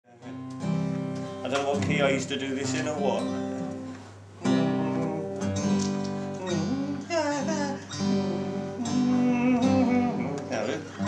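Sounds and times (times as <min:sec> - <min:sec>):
acoustic guitar strumming chords: 0:00.1 - 0:11.0.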